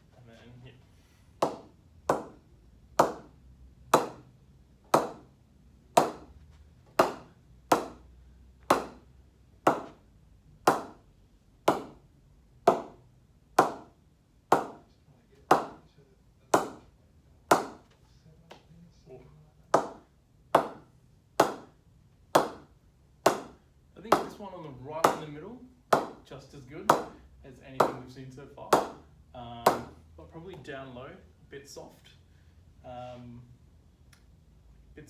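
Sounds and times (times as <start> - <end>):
ball knocking on cricket bat: 4.0 - 4.3, 6.9 - 8.1, 8.7 - 9.1, 9.7 - 10.0, 14.5 - 14.8, 25.9 - 26.2.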